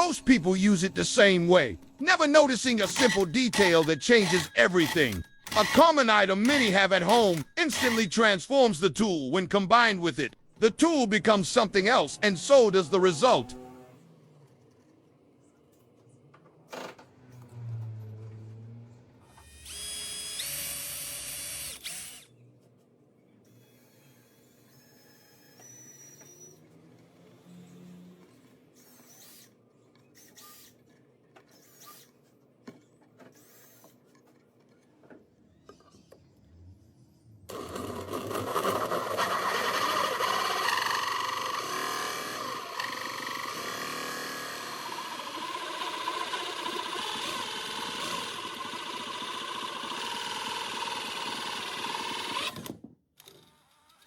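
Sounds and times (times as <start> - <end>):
power drill with hole saw: 2.7 - 8.1, 19.3 - 22.3, 23.5 - 26.6, 28.8 - 29.6, 31.5 - 32.1, 37.5 - 54.0.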